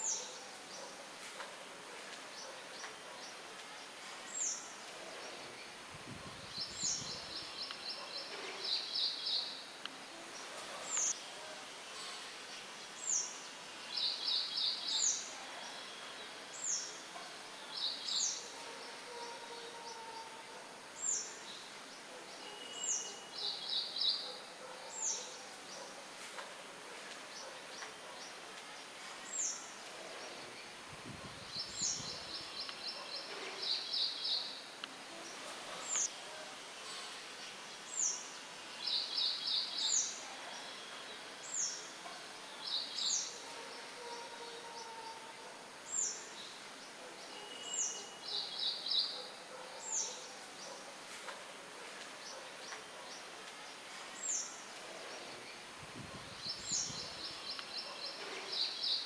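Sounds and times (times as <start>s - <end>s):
wind rustling leaves: 0.0s - 19.0s, 25.5s - 44.0s, 50.3s - 59.0s
songbirds chirping: 0.0s - 59.0s.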